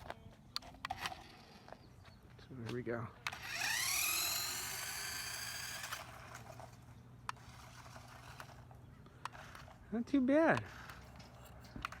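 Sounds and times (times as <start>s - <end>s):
toy car electric motor whining: 3.3s - 9.7s.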